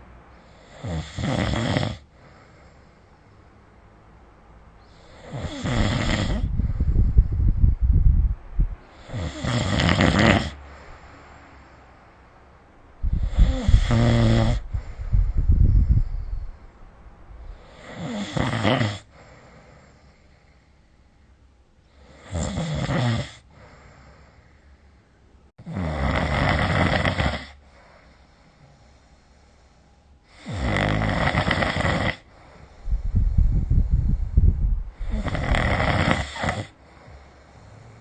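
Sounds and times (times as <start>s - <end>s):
person snoring: 0.5s - 2.6s, 5.0s - 6.9s, 8.9s - 10.6s, 13.1s - 14.9s, 17.5s - 19.4s, 22.0s - 24.2s, 25.6s - 27.6s, 30.3s - 32.4s, 34.3s - 38.0s.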